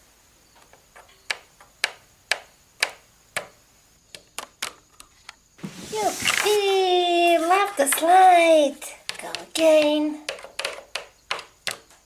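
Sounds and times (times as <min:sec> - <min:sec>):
doll tapping on plastic slide: 0:05.6 - 0:11.9.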